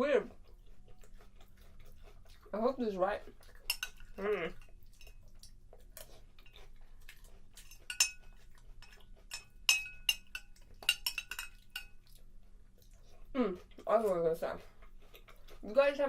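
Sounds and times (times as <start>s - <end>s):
metal spoon clinking on bowl: 3.7s - 5.2s, 7.6s - 12.0s.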